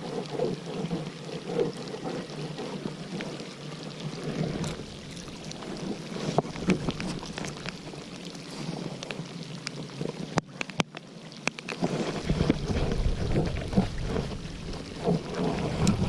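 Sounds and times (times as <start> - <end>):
wind buffeting microphone: 4.1 - 8.2, 12.0 - 16.0.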